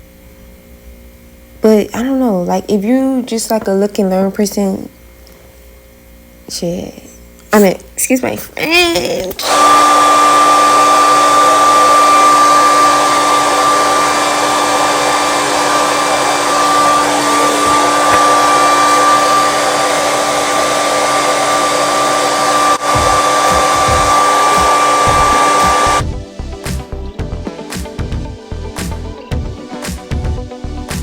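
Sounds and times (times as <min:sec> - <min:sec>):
hair dryer blowing: 0:09.4 - 0:26.8.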